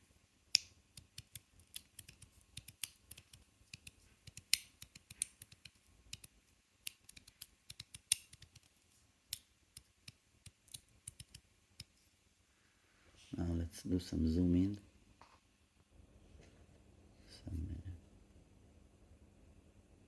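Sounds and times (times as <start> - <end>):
magnets snapping with sharp clicks: 0.5 - 11.9.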